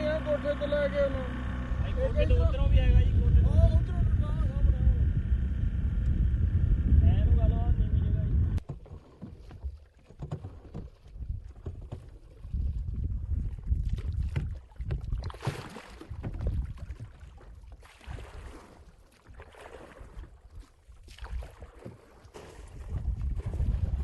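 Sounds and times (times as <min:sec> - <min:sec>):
wind buffeting microphone: 0:01.3 - 0:08.6, 0:10.7 - 0:15.3, 0:22.5 - 0:24.0.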